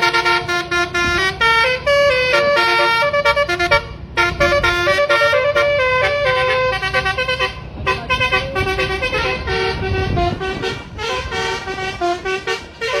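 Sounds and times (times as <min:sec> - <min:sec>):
multi-tone bus horn tune: 0:00.0 - 0:13.0
low rumble: 0:05.8 - 0:13.0.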